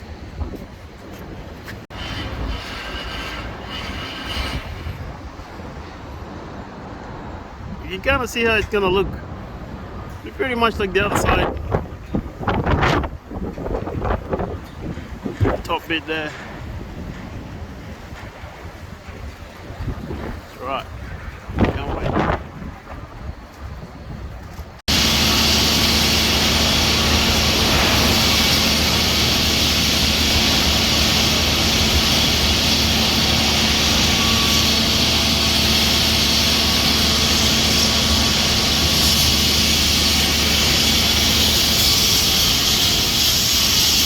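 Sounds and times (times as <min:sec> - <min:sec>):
wind-like noise: 0:00.0 - 0:25.1
mechanical roar with low hum: 0:24.9 - 0:44.0.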